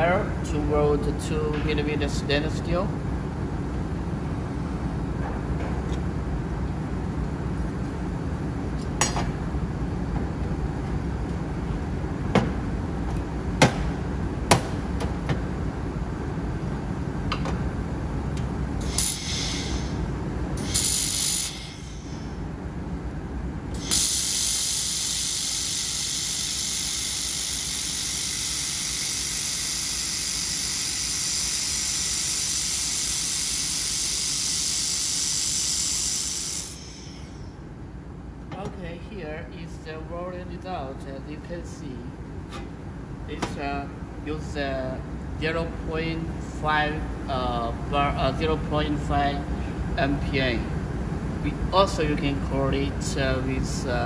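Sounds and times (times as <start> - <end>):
laser welding gas hiss: 18.8 - 22.4, 23.8 - 37.5.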